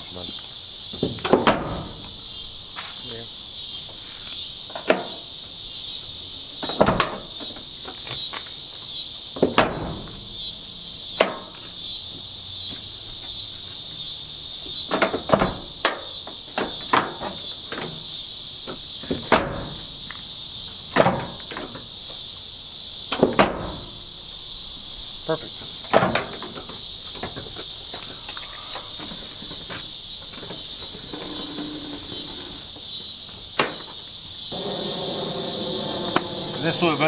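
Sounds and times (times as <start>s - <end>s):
insect chorus: 0.0s - 37.0s
knocks and taps on truck door: 0.9s - 2.1s, 6.6s - 7.4s, 9.4s - 10.2s, 14.9s - 18.0s, 18.7s - 20.0s, 20.9s - 21.8s, 23.1s - 24.0s.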